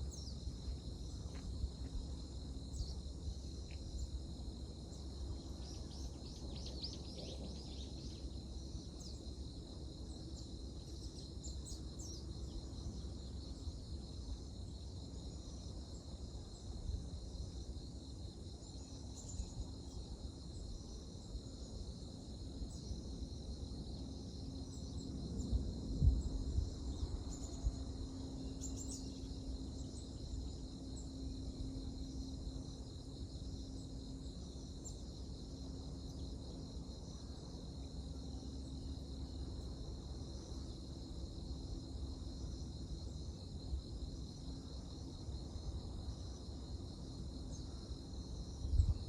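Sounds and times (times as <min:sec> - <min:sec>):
crickets trilling: 0:00.0 - 0:49.0
faint low hum: 0:00.0 - 0:49.0.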